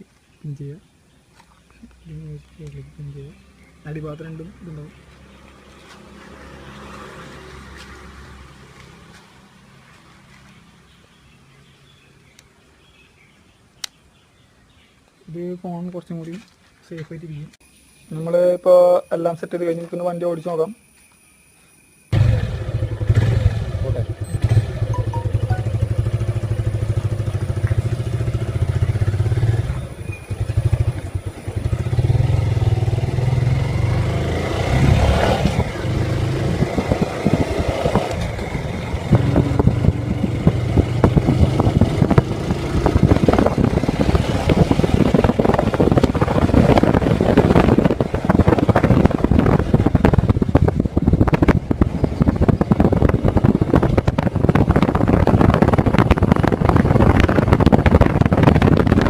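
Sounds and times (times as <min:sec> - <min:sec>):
road noise: 0:00.0 - 0:59.0
motorcycle engine running: 0:22.2 - 0:59.0.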